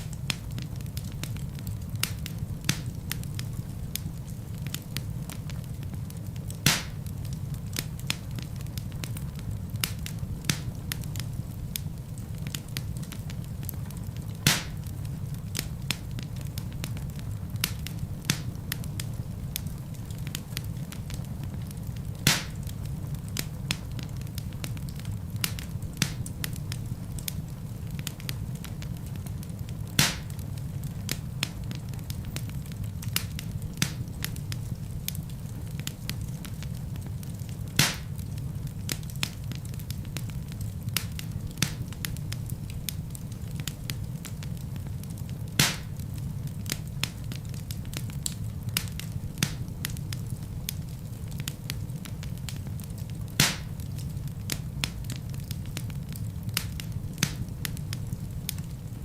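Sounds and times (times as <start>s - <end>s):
low rumble of burning: 0.0s - 59.0s
wood fire crackling: 0.0s - 59.0s
loud fire pop: 6.6s - 7.0s, 14.4s - 14.9s, 22.2s - 22.6s, 30.0s - 30.4s, 37.8s - 38.2s, 45.6s - 46.0s, 53.4s - 53.8s.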